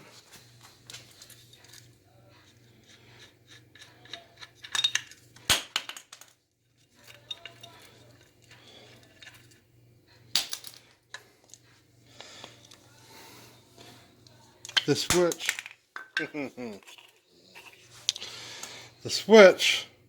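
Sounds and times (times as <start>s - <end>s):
metal parts clinking: 3.7s - 5.2s, 7.0s - 9.6s.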